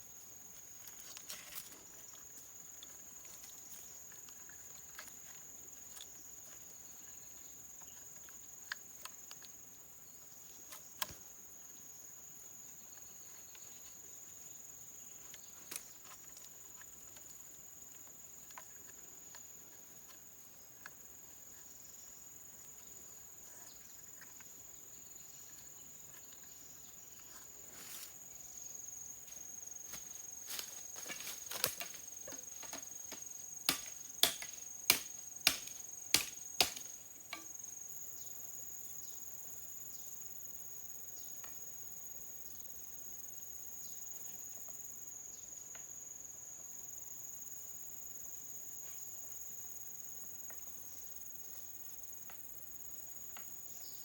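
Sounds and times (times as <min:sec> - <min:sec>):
insects droning: 0:00.0 - 0:54.0
sharp clicks and knocks: 0:30.6 - 0:37.5.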